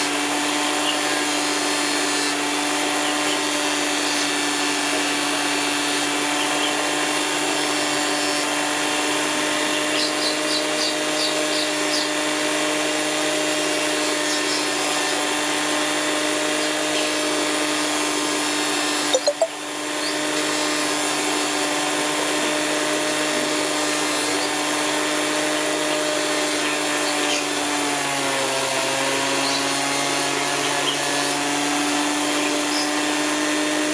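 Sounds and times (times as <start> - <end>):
grinding machine motor hum: 0.0 - 33.9.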